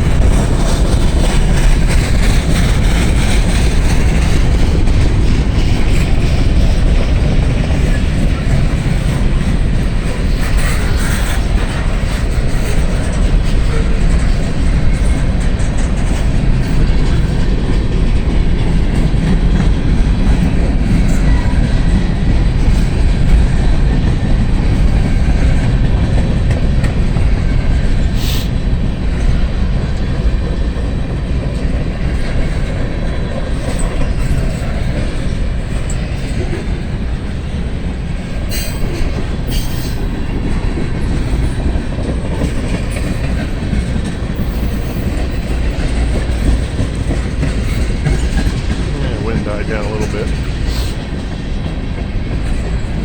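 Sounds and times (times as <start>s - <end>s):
train wheels clacking on rails: 0.0s - 53.0s
wind buffeting microphone: 0.0s - 53.0s.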